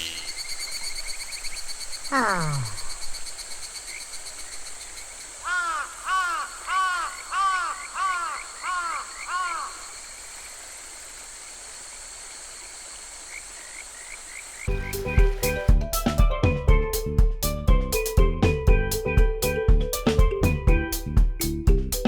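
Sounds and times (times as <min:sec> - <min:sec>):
high-pitched drone: 0:00.0 - 0:00.7
crow cawing: 0:05.4 - 0:10.0.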